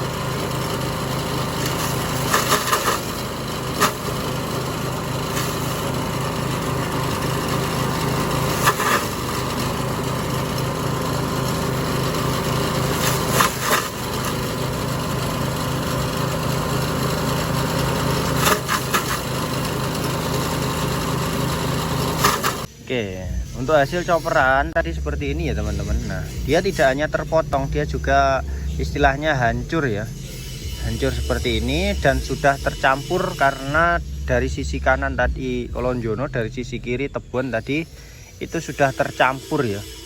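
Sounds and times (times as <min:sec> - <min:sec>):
forage chopper engine running: 0:00.0 - 0:40.0
stalks being crunched: 0:08.4 - 0:09.2, 0:13.0 - 0:14.3, 0:18.4 - 0:19.2.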